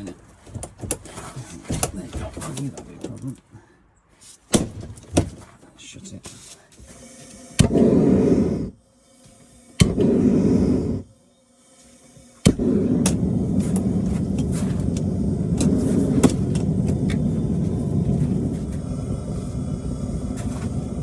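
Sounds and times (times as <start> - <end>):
gas burner roaring: 6.9 - 21.0.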